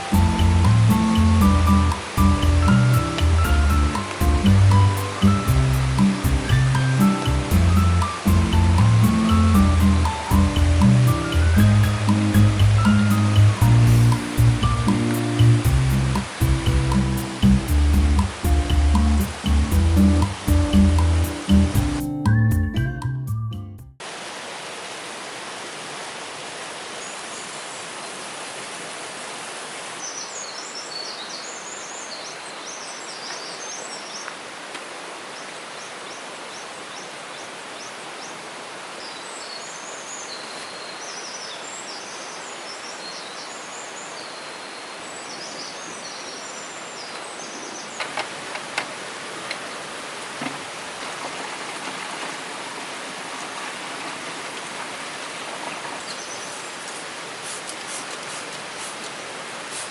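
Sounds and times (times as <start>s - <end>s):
heavy rain hissing: 0.0s - 22.1s, 24.0s - 27.0s, 56.4s - 59.9s.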